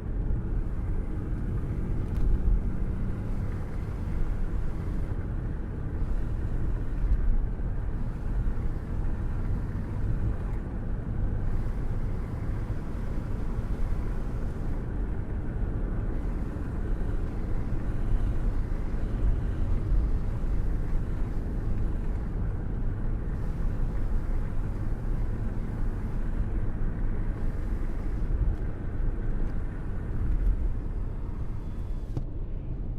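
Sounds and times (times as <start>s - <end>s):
road and engine rumble: 0.0s - 32.9s
wind rushing past car window: 0.0s - 32.9s.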